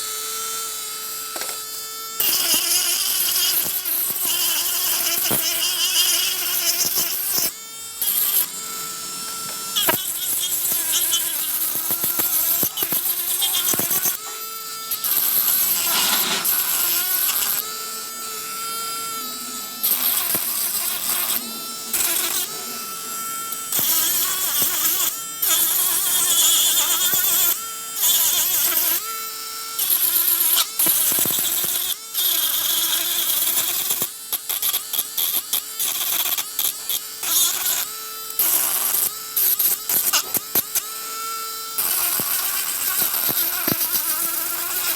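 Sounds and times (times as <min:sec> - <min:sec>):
polishing machine whine: 0:00.0 - 0:29.8
scratchy grinding: 0:02.2 - 0:27.4.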